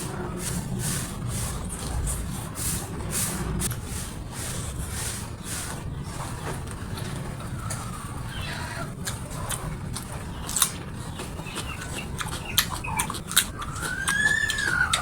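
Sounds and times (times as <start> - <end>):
low background rumble: 0.0 - 15.0
crisp chewing: 6.6 - 15.0.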